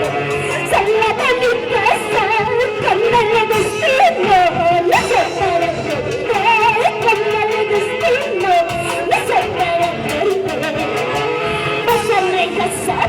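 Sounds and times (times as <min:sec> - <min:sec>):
folk orchestra music: 0:00.0 - 0:13.0.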